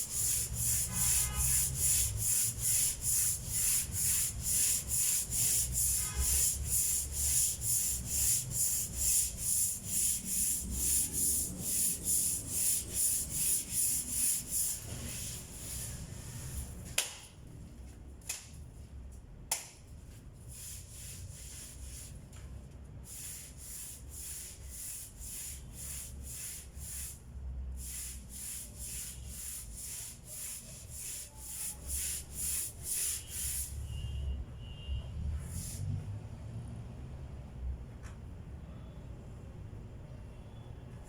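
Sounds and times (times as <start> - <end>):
sandpaper rubbing strokes: 0.0 - 16.1, 23.1 - 27.2, 27.8 - 33.8.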